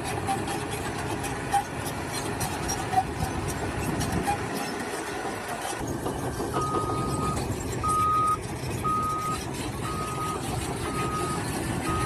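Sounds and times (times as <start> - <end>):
construction machinery engine rumble: 0.0 - 12.0
clanks and knocks: 5.8 - 9.7.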